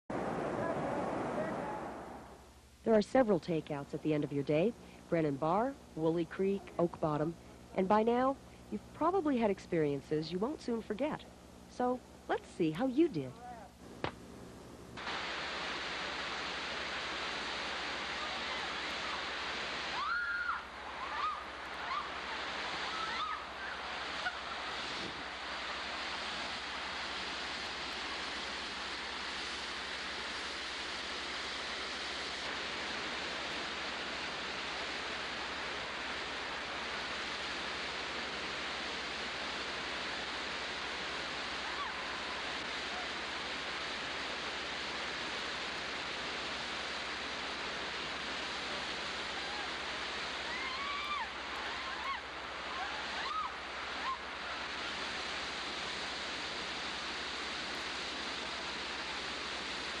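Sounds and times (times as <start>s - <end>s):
river rapids rushing: 15.1s - 60.0s
people yelling: 19.9s - 23.8s, 41.6s - 42.3s, 50.4s - 54.2s.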